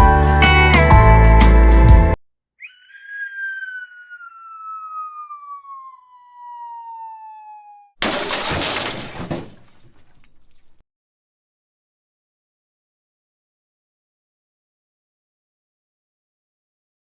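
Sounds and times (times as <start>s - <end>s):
falling whistle sound effect: 2.6s - 7.9s
loud crash and shatter: 8.0s - 10.8s.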